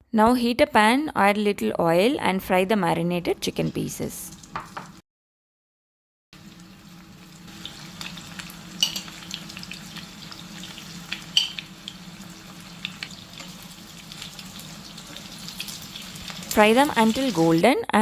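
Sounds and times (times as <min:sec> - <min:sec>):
chicken sizzling in a pan: 0:03.6 - 0:05.0, 0:06.4 - 0:17.7.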